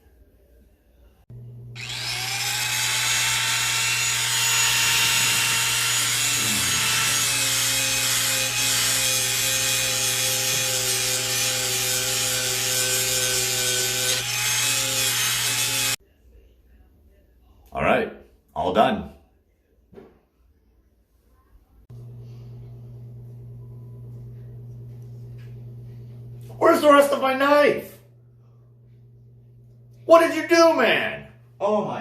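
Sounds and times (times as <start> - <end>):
electric grinder motor: 1.4 - 16.0.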